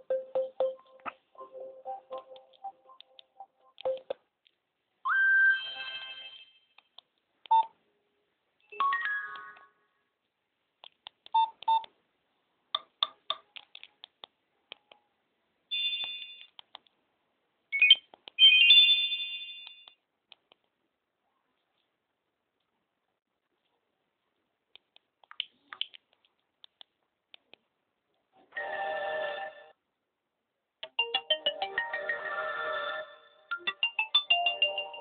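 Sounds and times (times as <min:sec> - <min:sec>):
phone electronic alert tones: 0:00.1 - 0:02.8.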